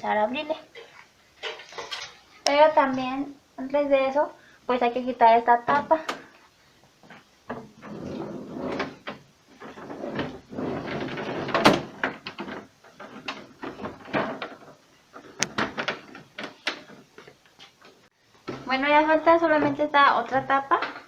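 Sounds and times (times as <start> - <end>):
plastic clicking and scraping: 8.8 - 18.0.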